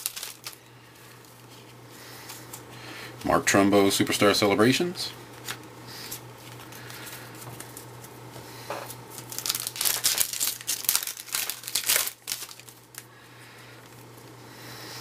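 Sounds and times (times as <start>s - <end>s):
foil wrapper tearing and crinkling: 0.0s - 0.6s, 9.1s - 13.1s.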